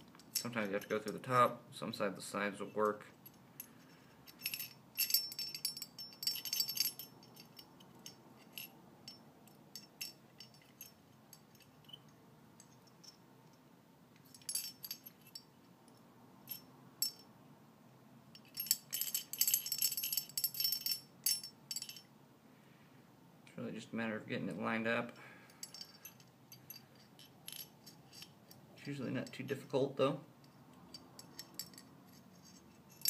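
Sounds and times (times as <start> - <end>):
small steel parts clinking: 0.0 - 1.3, 2.7 - 13.6, 14.2 - 17.3, 18.3 - 22.1, 25.2 - 28.6, 30.4 - 33.0.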